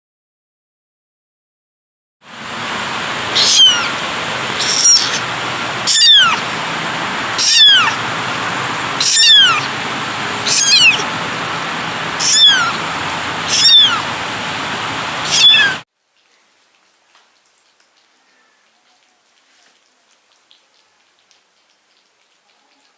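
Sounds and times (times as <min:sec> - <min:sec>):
steady hiss: 0:02.3 - 0:15.8
kitten mewing: 0:02.8 - 0:15.8.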